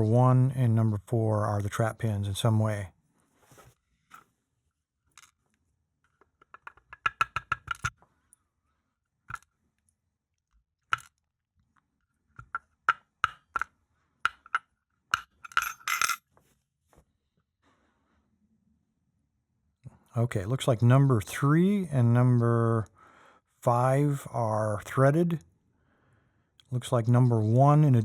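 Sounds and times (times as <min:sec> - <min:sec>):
metal lock parts clinking: 0:15.2 - 0:16.3.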